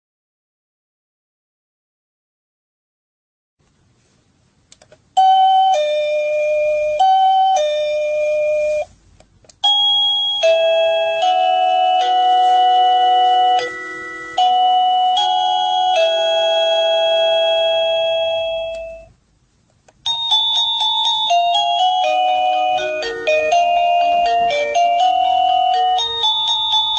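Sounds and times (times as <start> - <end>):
doorbell ding-dong chime: 5.2 - 8.9, 9.6 - 19.1, 20.0 - 26.9
electronic doorbell melody: 5.2 - 8.9, 9.6 - 19.1, 20.0 - 26.9.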